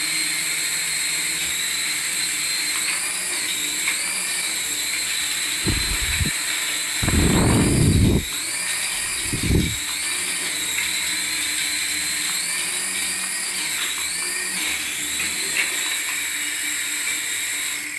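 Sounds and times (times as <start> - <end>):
toy motor whirring: 5.6 - 6.3, 7.0 - 8.3, 9.0 - 9.8.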